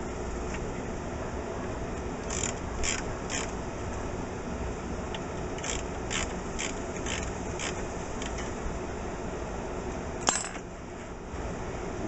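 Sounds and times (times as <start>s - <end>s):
sharp mechanical clicks: 2.2s - 3.5s, 5.6s - 8.4s.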